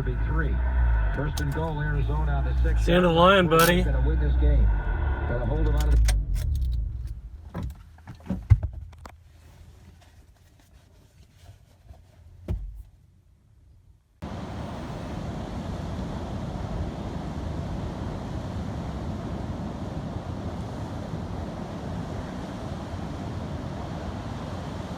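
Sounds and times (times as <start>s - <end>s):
wind and road rushing: 14.2s - 24.9s.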